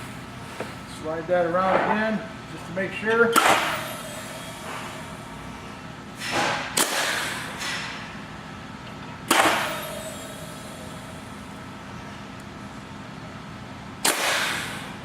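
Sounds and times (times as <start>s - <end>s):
press clunk: 3.2s - 5.2s, 9.2s - 10.5s.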